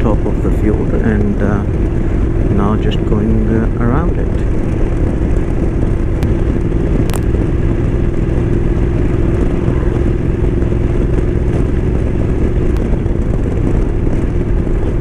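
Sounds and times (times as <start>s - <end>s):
motorcycle engine cruising: 0.0s - 15.0s
wind rush on microphone: 0.0s - 15.0s.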